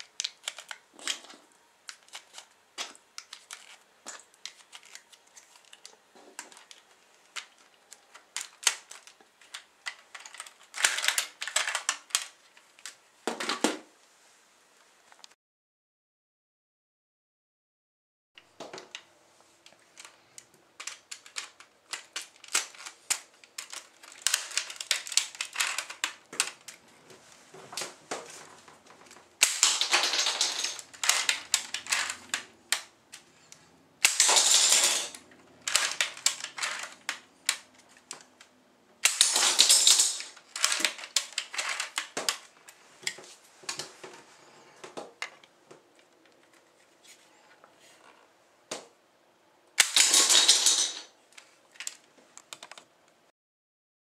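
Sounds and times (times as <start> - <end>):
plastic toy parts clicking: 0.0 - 13.7, 19.6 - 26.8, 29.1 - 42.6, 49.8 - 52.9
plastic parts rattling: 0.0 - 13.8, 19.6 - 43.9, 49.8 - 53.0.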